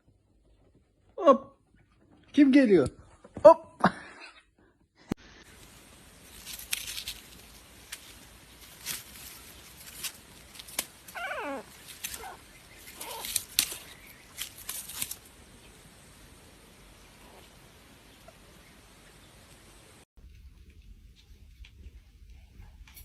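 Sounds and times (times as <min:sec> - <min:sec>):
pet animal wavering cry: 0:11.1 - 0:13.4.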